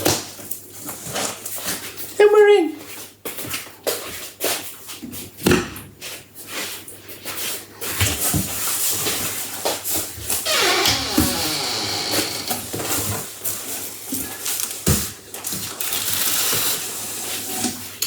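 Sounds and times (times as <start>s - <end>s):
short squeaks: 10.5s - 12.6s.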